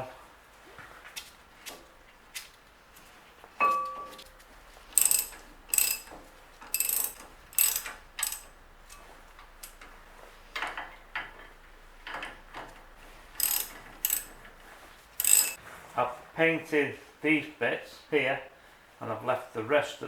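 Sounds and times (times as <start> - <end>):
ratchet wrench clicking: 5.0 - 9.0, 13.4 - 14.4, 15.2 - 15.6.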